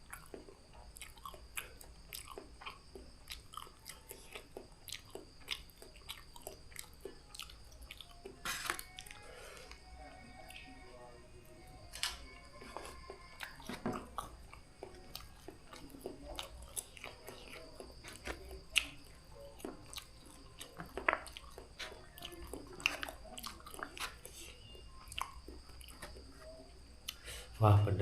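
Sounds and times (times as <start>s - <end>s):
mouth clicks and smacks: 0.0s - 8.4s, 13.4s - 26.3s
person chewing noodles: 0.0s - 10.7s, 12.0s - 27.5s.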